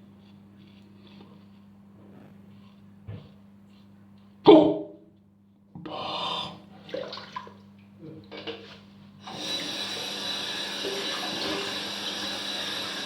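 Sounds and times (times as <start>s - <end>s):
small knocks and rustles: 0.6s - 4.3s
tap water running into sink: 9.3s - 13.0s.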